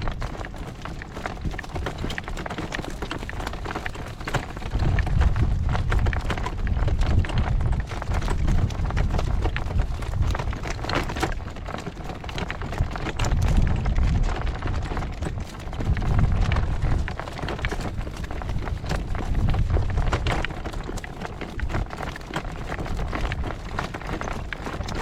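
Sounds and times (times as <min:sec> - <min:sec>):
horse hooves clip-clopping: 0:00.0 - 0:25.0
wind buffeting microphone: 0:00.0 - 0:25.0.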